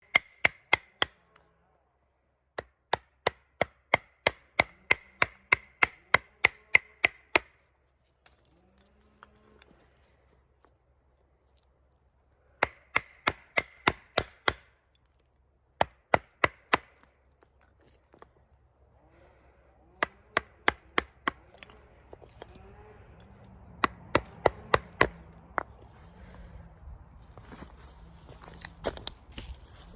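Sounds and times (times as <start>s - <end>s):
chisel struck with wooden block: 0.0s - 1.2s
wooden block knocking chisel: 0.0s - 1.2s, 2.6s - 7.6s, 20.0s - 22.6s, 23.8s - 25.9s.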